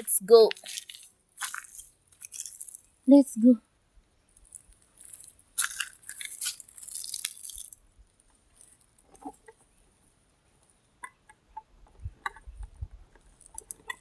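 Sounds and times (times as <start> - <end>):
footsteps crunching through dry grass: 0.5 - 2.8, 4.4 - 7.8.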